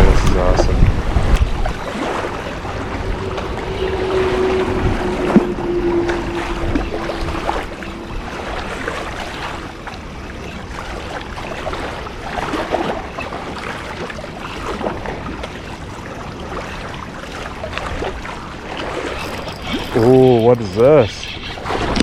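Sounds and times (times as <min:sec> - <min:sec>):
wind buffeting microphone: 0:00.0 - 0:13.2
rushing choppy water: 0:00.0 - 0:20.9.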